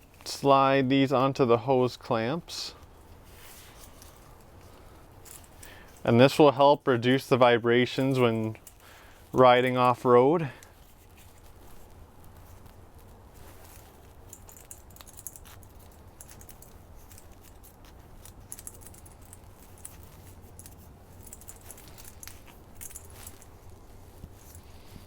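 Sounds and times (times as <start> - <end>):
metal hose clamps clinking: 14.3 - 23.5.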